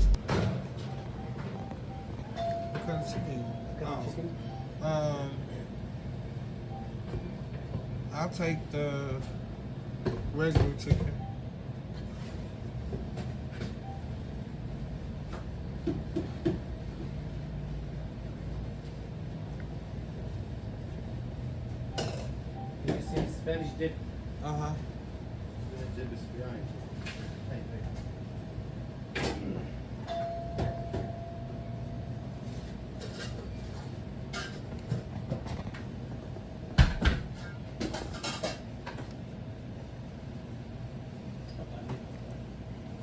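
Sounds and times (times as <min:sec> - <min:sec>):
low background rumble: 0:00.0 - 0:00.2
low steady hum: 0:00.0 - 0:13.0, 0:30.0 - 0:43.0.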